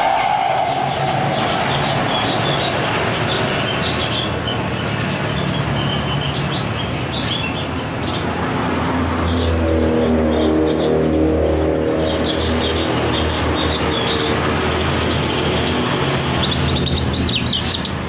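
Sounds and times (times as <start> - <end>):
steady rushing noise: 0.0 - 5.8
birds chirping and whistling: 0.0 - 8.2, 11.6 - 18.0.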